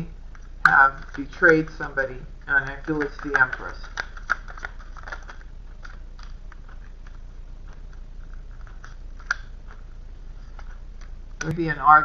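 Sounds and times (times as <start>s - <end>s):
cards clicking and snapping: 0.3s - 9.8s.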